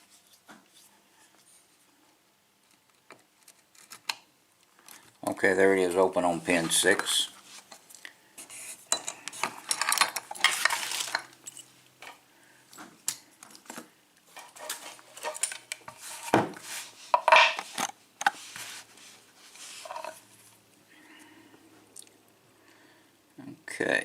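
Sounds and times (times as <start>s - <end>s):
small metal parts clinking: 8.9s - 11.7s.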